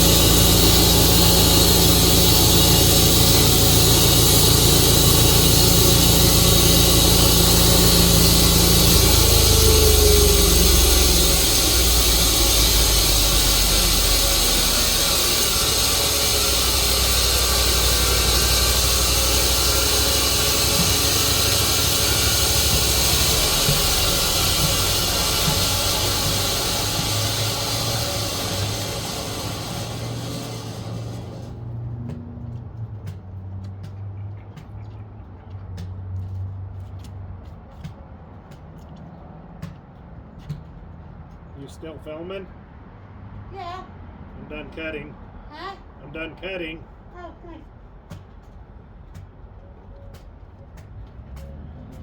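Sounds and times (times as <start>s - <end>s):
saw cutting log hiss: 0.0s - 31.5s
sawmill engine droning: 0.0s - 32.2s.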